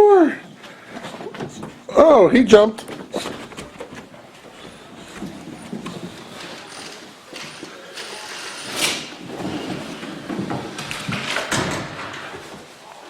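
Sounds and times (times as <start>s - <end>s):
rustling and handling noises: 0.5s - 13.0s
door opening: 4.8s - 12.7s.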